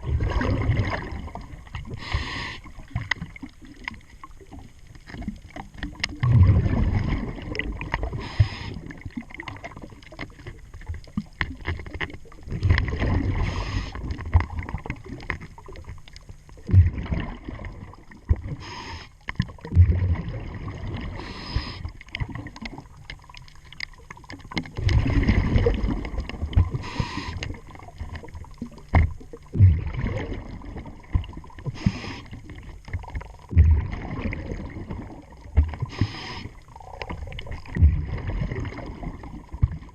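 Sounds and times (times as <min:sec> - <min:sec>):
exhaled bubbles underwater: 0:00.0 - 0:39.9
regulator inhalation hiss: 0:02.0 - 0:02.7, 0:08.2 - 0:08.8, 0:18.6 - 0:19.2, 0:21.2 - 0:21.9, 0:26.8 - 0:27.5, 0:31.8 - 0:32.4, 0:35.9 - 0:36.6.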